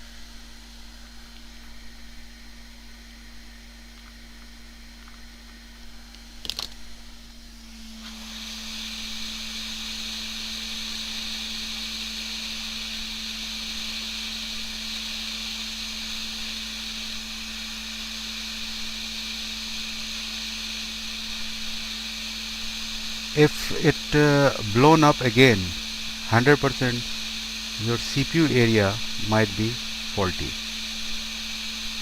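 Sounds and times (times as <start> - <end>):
hot air station blowing hiss: 7.6 - 32.0.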